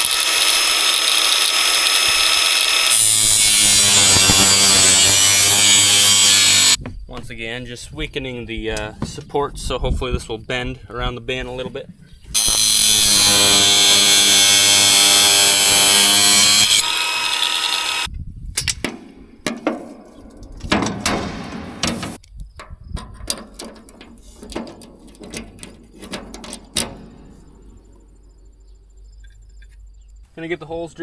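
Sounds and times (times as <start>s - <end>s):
power tool cutting steel: 0.0s - 6.8s, 12.4s - 18.1s
metallic clanks and knocks: 18.6s - 27.7s.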